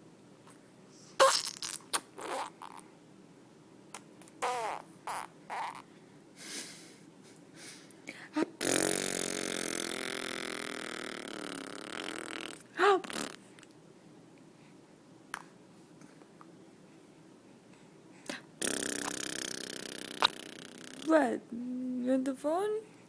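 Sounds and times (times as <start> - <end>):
baby blowing raspberries: 4.4 - 5.8, 8.6 - 13.5, 18.3 - 21.2
baby squealing: 4.4 - 5.8.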